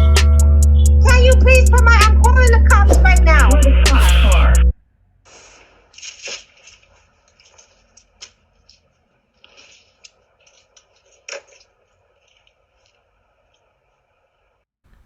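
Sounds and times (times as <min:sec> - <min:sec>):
faint scuffs and rustles: 0:05.3 - 0:13.8.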